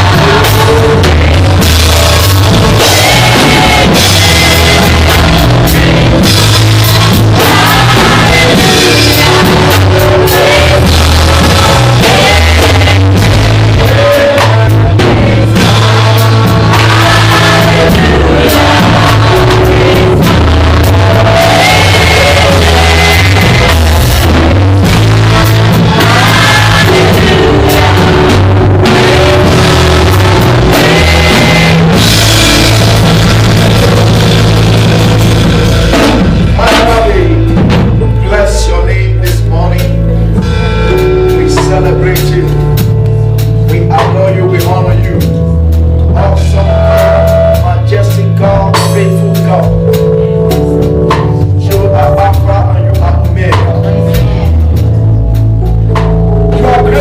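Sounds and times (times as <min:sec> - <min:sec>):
person singing: 0:00.0 - 0:34.2, 0:56.5 - 0:57.0
drum kit and bass beat: 0:00.0 - 0:57.0
worship band music: 0:00.0 - 0:57.0.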